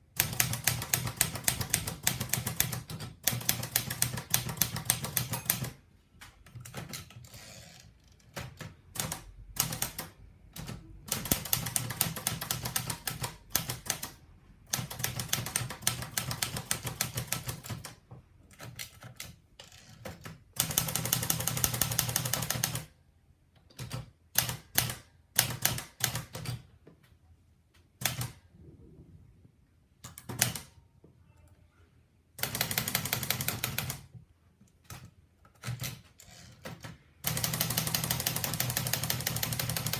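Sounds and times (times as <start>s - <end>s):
manual typewriter keystrokes: 0.0s - 7.4s, 8.2s - 22.9s, 23.6s - 26.7s, 28.0s - 28.4s, 30.0s - 30.7s, 32.4s - 34.1s, 34.8s - 39.9s.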